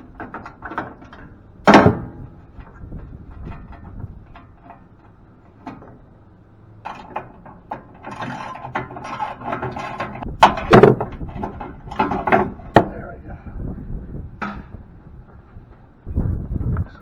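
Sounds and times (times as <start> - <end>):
metal parts scraping and rattling: 0.0 - 13.1
sharp loud knocks: 1.6 - 2.7.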